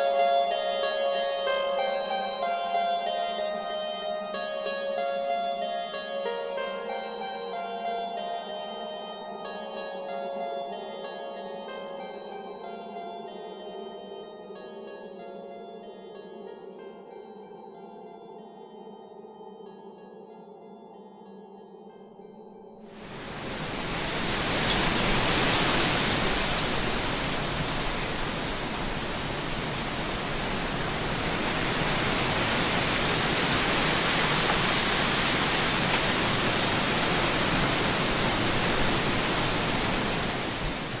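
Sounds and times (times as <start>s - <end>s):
surf on rocky shore: 23.0s - 41.0s.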